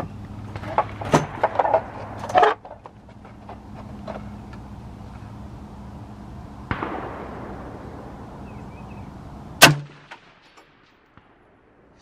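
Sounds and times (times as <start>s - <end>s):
steady low hum: 0.0s - 12.0s
gunshot with echo: 6.7s - 8.2s
loud rifle shot: 6.7s - 8.6s, 9.6s - 11.9s.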